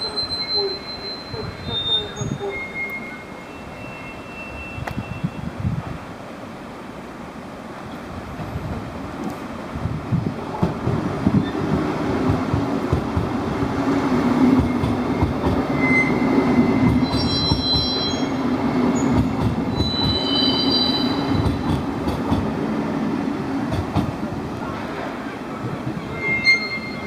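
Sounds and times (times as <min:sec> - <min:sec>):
high wheel squeal: 0:00.0 - 0:05.5, 0:14.6 - 0:21.6, 0:26.0 - 0:27.0
train rumbling past: 0:00.0 - 0:27.0.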